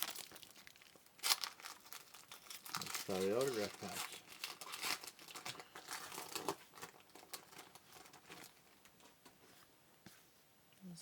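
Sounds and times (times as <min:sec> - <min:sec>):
card pack wrapper crinkling: 0:00.0 - 0:08.8.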